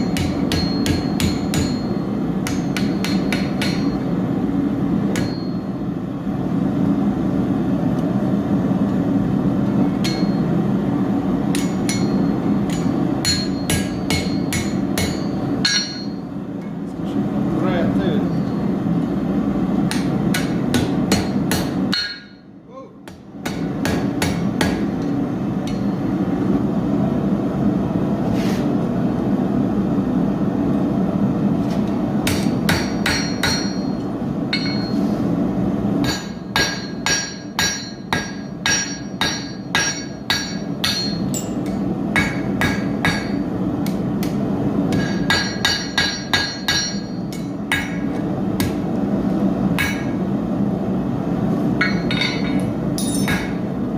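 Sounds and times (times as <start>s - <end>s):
hammer striking steel on anvil: 0.0s - 4.2s, 5.0s - 5.8s, 9.9s - 10.6s, 11.4s - 16.3s, 19.8s - 26.2s, 32.2s - 35.1s, 36.0s - 48.9s, 49.8s - 50.2s, 51.8s - 53.7s.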